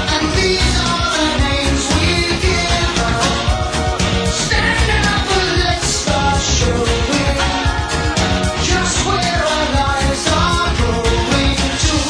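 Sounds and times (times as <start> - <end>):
rock song with singing: 0.0 - 12.0.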